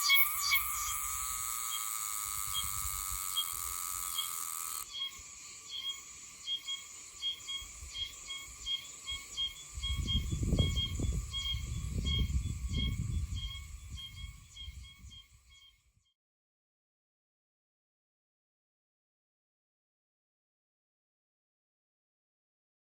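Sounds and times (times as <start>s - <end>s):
cicada calling metallic notes: 0.0s - 15.8s.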